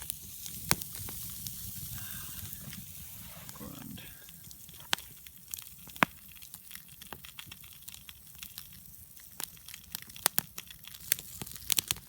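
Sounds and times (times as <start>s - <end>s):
campfire crackling and popping: 0.0s - 12.0s.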